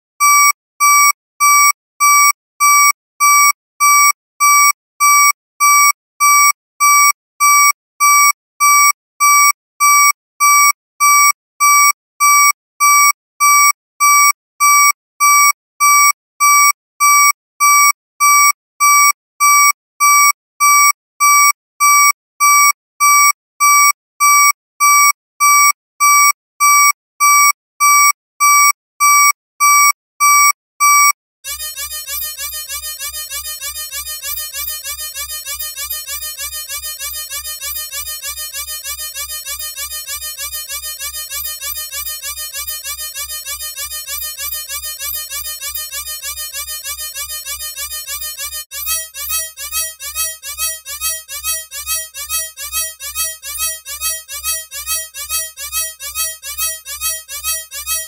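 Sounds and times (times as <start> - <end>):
electronic alarm beeping: 31.5 - 58.0.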